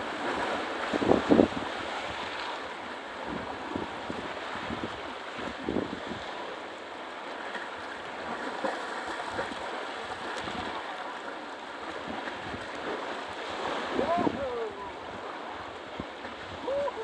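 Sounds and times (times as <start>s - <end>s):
wind buffeting microphone: 0.0s - 6.3s
sea surf breaking: 8.2s - 17.0s.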